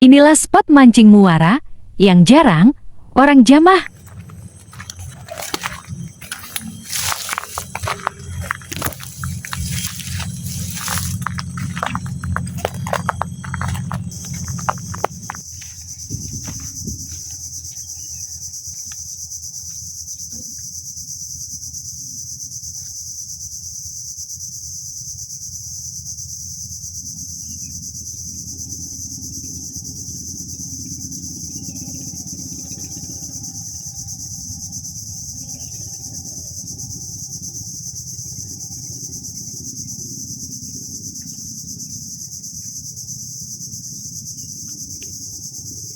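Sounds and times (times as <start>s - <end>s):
low steady rumble: 0.4s - 18.9s
insects chorus: 3.2s - 45.9s.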